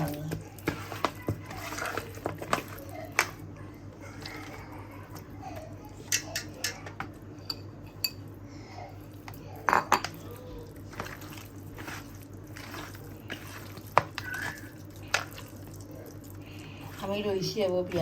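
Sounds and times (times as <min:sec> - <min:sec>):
bowls and utensils clinking: 0:06.0 - 0:08.3, 0:09.6 - 0:15.5.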